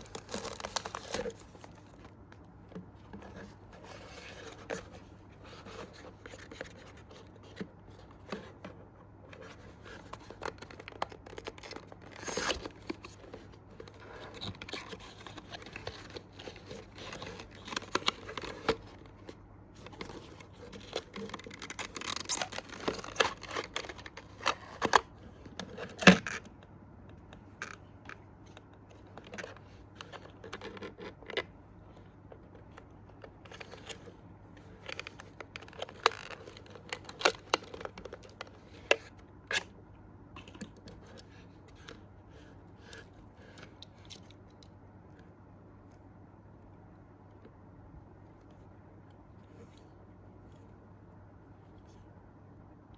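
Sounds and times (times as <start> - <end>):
packaging scratching and tearing: 0.0 - 2.1, 9.4 - 19.1, 19.8 - 26.4.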